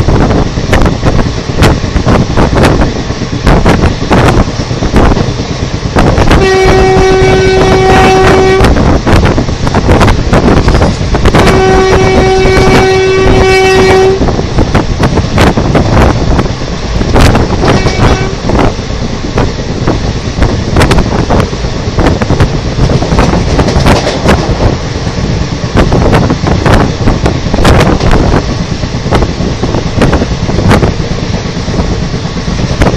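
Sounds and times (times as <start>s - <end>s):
train wheels clattering on rails: 0.0s - 32.9s
twin-tone locomotive horn: 6.2s - 8.8s, 11.2s - 14.4s, 17.6s - 18.6s.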